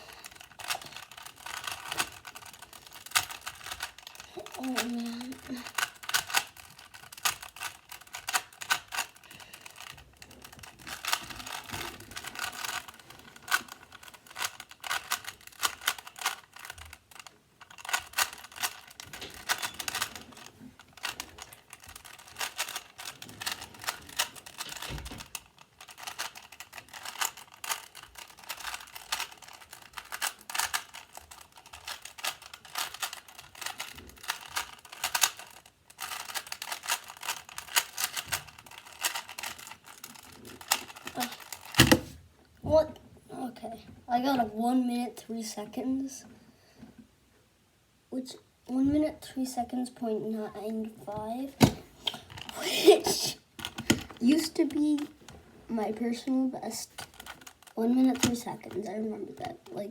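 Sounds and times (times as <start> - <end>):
puzzle cube clicking: 0.2 - 42.2, 56.8 - 58.8.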